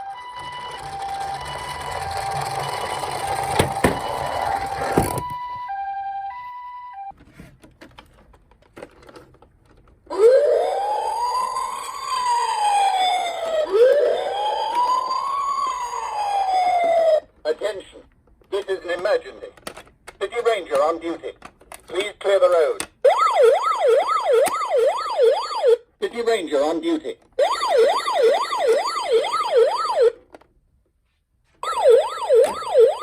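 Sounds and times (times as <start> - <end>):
police car siren wailing: 0.0 - 7.1, 10.1 - 17.3, 23.0 - 25.8, 27.4 - 30.2, 31.6 - 33.0
ambulance two-tone siren: 0.0 - 7.2, 10.1 - 17.3, 23.0 - 25.8, 27.4 - 30.2, 31.6 - 33.0.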